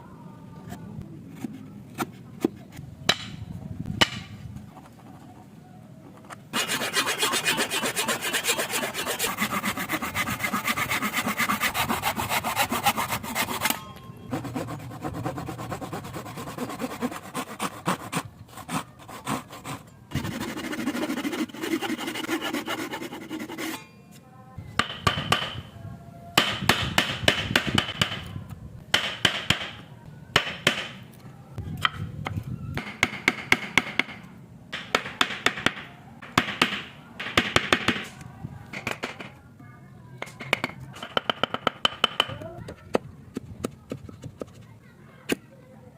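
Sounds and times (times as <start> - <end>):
scraping and rubbing on wood: 6.2 - 23.8
hand saw cutting wood: 6.5 - 23.8.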